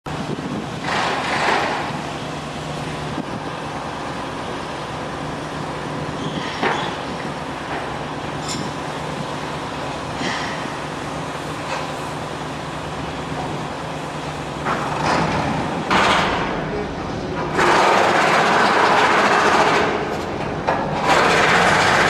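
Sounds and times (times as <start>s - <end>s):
construction machinery engine drone: 0.1s - 22.0s.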